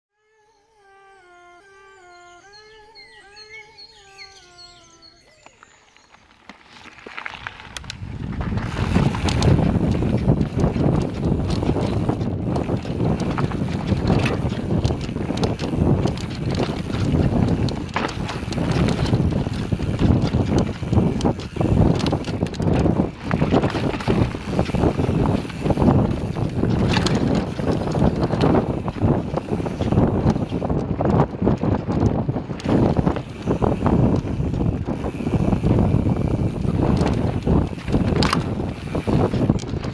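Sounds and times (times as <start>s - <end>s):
faint short melody: 0.3s - 5.9s
bike tyre rumble on dirt: 5.6s - 39.9s
bike rattles and knocks: 6.4s - 39.9s
wind buffeting microphone: 7.3s - 39.9s.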